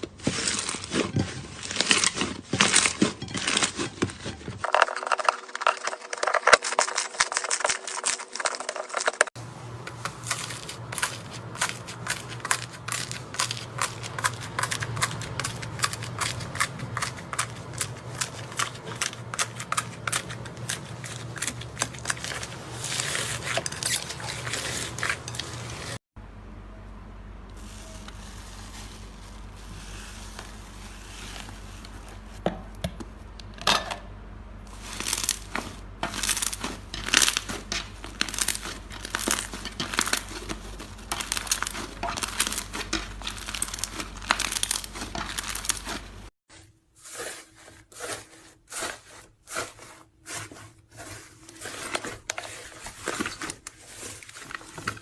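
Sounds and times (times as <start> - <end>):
slime crackling and popping: 34.7 - 46.3.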